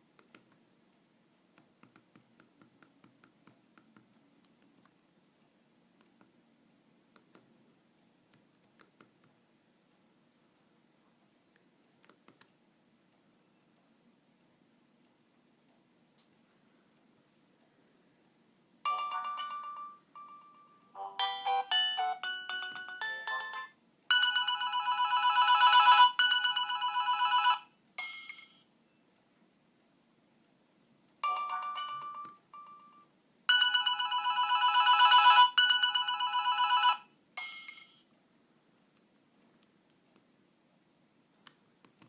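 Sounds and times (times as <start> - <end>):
mobile phone ringtone melody: 18.9 - 27.7, 31.2 - 38.0.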